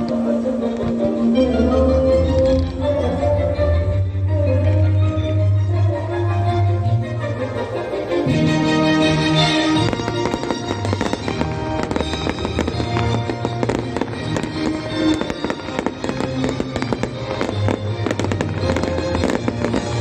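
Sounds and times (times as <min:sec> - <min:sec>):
loud music: 0:00.0 - 0:20.0
fireworks bangs and crackles: 0:09.3 - 0:20.0.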